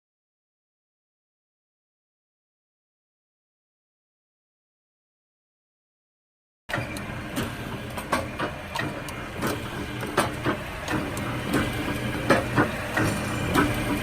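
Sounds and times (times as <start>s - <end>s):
mechanical clicks and knocks: 6.7s - 14.0s
motor hum: 6.7s - 14.0s.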